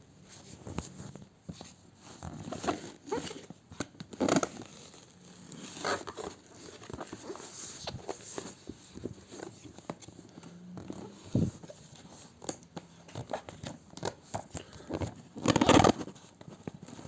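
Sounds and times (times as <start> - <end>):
packaging rustling scrape: 4.2 - 12.5.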